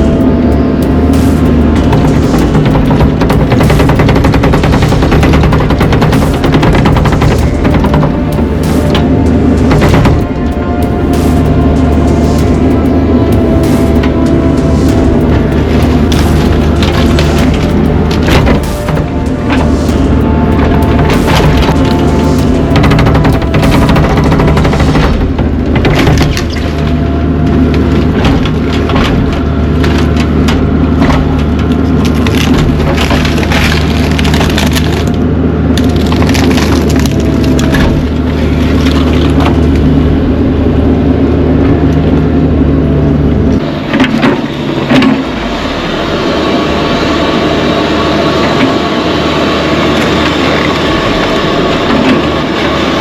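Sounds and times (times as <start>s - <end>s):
wood cracking and splintering: 0.0s - 40.3s
excavator diesel engine running: 0.0s - 53.0s.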